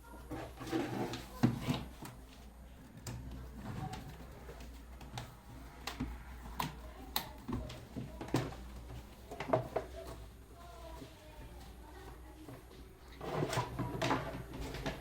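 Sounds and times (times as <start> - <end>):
plastic parts clicking and knocking: 3.0 - 10.2, 12.5 - 15.0.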